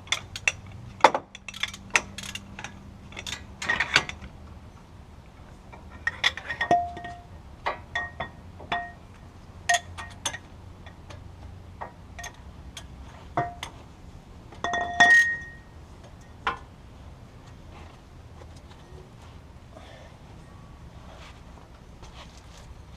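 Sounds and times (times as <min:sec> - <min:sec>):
hand tools clinking on metal: 0:00.0 - 0:04.3, 0:05.7 - 0:11.2, 0:11.8 - 0:13.8, 0:14.6 - 0:16.6.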